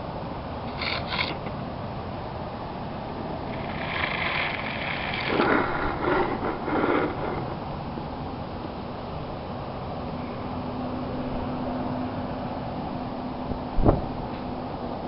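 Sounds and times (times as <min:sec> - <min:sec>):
mechanical rattling: 0:00.6 - 0:01.6, 0:03.4 - 0:08.0
strong wind blowing: 0:03.1 - 0:09.2
quick clicks: 0:03.5 - 0:07.7.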